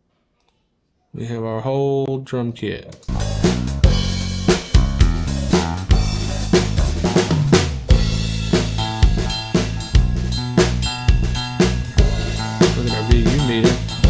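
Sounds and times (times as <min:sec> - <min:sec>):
drum kit playing: 0:03.0 - 0:14.0
sustained bass notes: 0:03.1 - 0:14.0.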